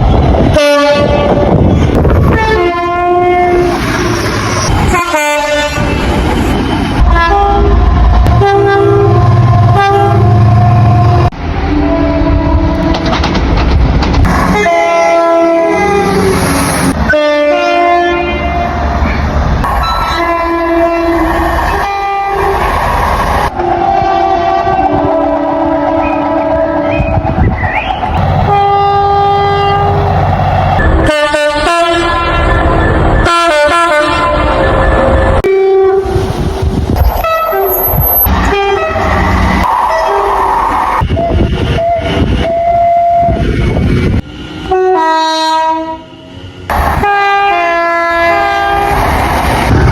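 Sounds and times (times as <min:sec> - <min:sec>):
train running noise: 0:00.0 - 0:49.9
train horn blasts: 0:00.5 - 0:01.6, 0:02.3 - 0:03.7, 0:04.9 - 0:06.0, 0:07.0 - 0:13.0, 0:14.5 - 0:16.3, 0:17.1 - 0:18.7, 0:20.1 - 0:22.6, 0:23.6 - 0:27.0, 0:28.4 - 0:30.1, 0:31.0 - 0:32.5, 0:33.2 - 0:34.6, 0:35.4 - 0:36.2, 0:37.2 - 0:39.3, 0:44.7 - 0:46.4, 0:47.0 - 0:49.0.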